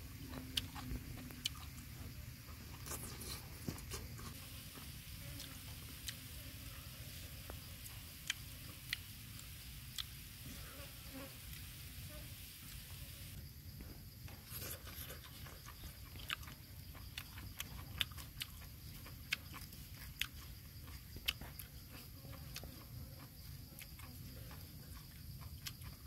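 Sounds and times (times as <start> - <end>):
insects buzzing: 0.0 - 26.0
wet chewing clicks: 0.2 - 2.1, 14.4 - 26.0.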